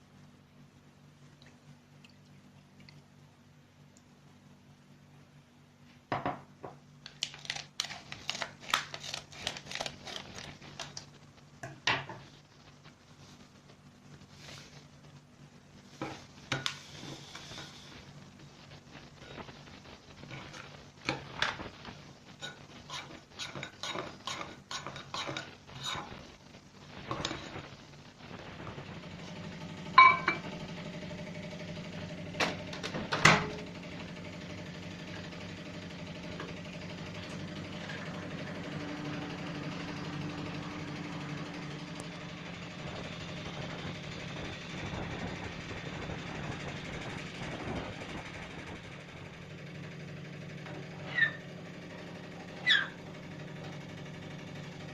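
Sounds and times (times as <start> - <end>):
microwave oven humming: 25.5 - 54.9
spoon clinking against a mug: 30.0 - 30.4
microwave beep: 30.0 - 30.5.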